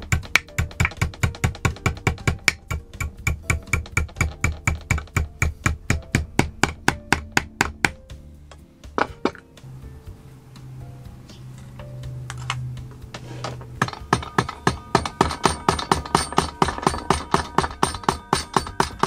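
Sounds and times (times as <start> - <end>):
rapid sharp knocks: 0.0 - 8.0, 13.8 - 19.0
background music: 0.0 - 19.0.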